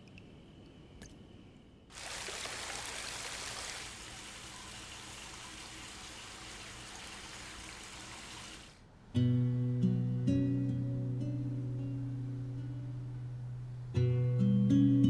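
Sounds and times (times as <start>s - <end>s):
water running: 1.9s - 8.8s.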